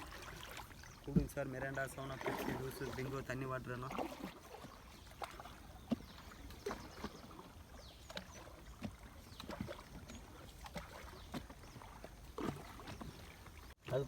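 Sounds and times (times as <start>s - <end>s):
low rumble of moving water: 0.0s - 14.0s
small water splashes: 0.0s - 14.0s
paddle knocks: 0.5s - 3.1s.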